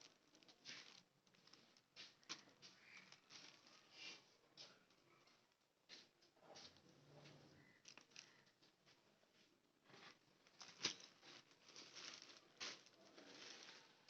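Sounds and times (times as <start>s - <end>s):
packaging rustling and crinkling: 0.0s - 5.6s, 9.8s - 14.0s.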